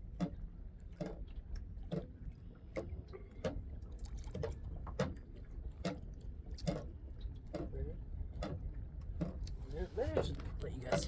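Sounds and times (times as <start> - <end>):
small waves lapping against a hull: 0.0 - 11.0.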